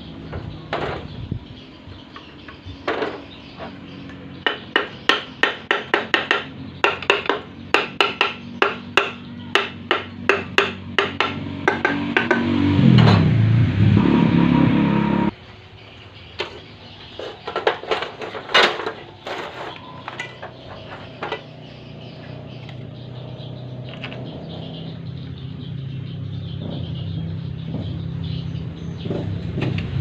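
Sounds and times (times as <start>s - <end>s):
hand tools clicking and knocking: 2.2s - 13.2s, 16.4s - 21.7s
low engine hum: 10.2s - 15.4s, 19.2s - 30.0s.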